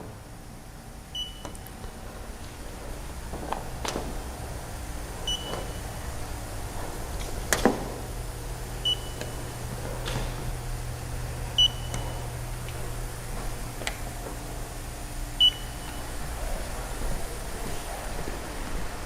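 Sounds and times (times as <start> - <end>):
low steady hum: 0.0 - 19.0
short electronic beeps: 1.2 - 1.5, 5.3 - 5.9, 11.6 - 12.2.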